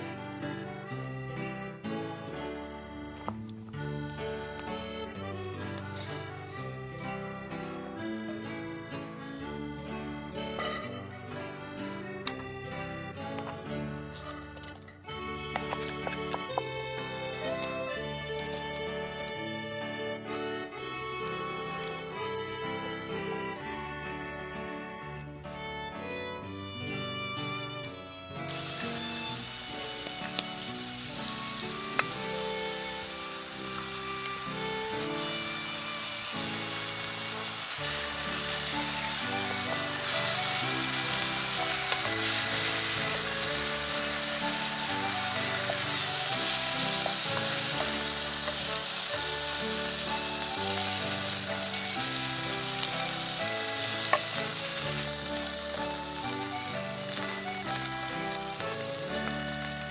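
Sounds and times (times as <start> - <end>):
background music: 0.0 - 59.9
food sizzling in frying pan: 10.5 - 11.1, 14.1 - 14.9, 17.3 - 19.3, 28.5 - 59.9.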